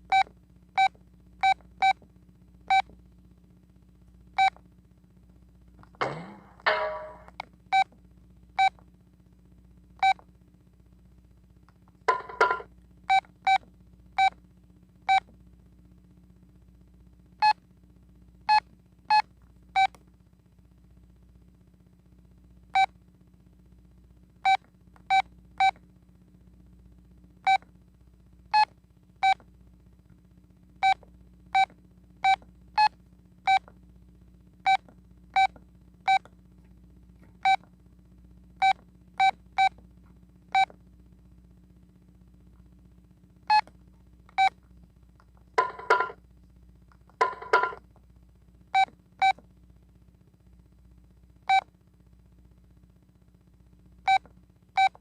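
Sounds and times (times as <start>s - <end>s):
phone keypad beeps: 12.1s - 12.6s, 45.6s - 46.2s, 47.2s - 47.8s.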